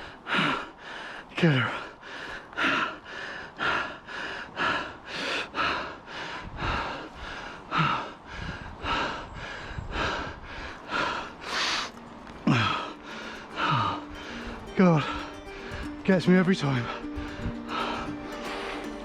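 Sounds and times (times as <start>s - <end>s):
man panting hard: 0.0s - 16.0s, 16.8s - 19.0s.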